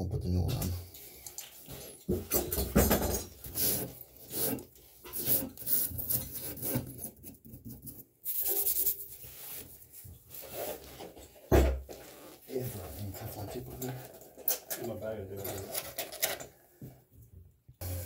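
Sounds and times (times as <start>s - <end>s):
scrubbing metal pipe: 3.3s - 9.7s.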